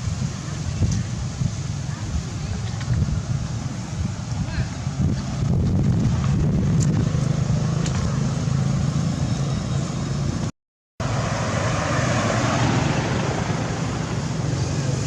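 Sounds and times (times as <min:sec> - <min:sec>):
motor vehicle engine hum: 0:00.0 - 0:15.0
traffic noise: 0:00.0 - 0:15.0.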